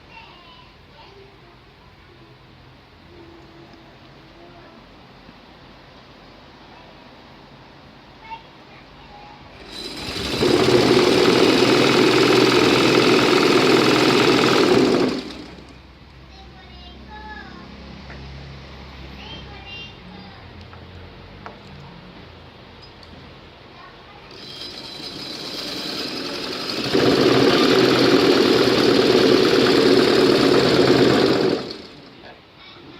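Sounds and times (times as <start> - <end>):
sewing machine whirring: 9.6 - 15.9, 24.3 - 32.3.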